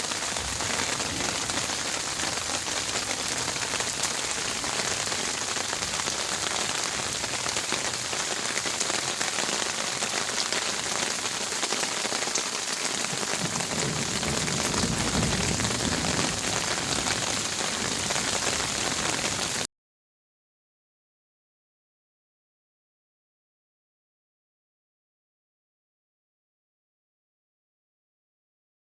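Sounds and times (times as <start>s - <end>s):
heavy rain on leaves: 0.0s - 19.7s.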